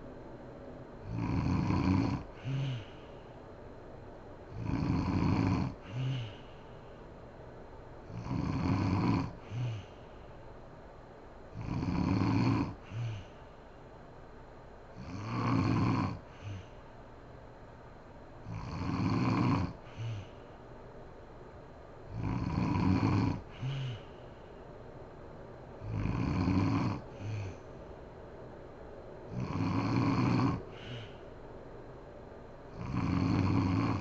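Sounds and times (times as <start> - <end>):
woman snoring: 1.0 - 3.1, 4.5 - 6.6, 8.1 - 10.1, 11.6 - 13.4, 15.0 - 16.8, 18.4 - 20.4, 22.1 - 24.2, 25.8 - 27.6, 29.3 - 31.2, 32.7 - 34.0.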